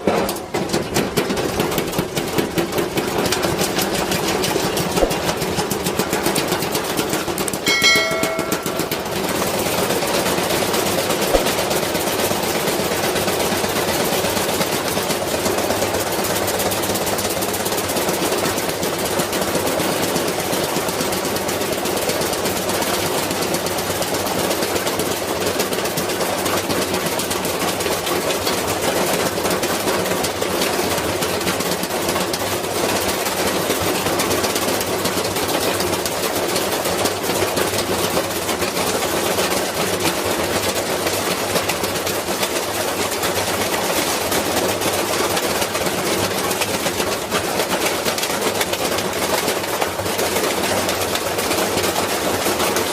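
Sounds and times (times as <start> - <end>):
washing machine rattling: 0.0 - 12.0.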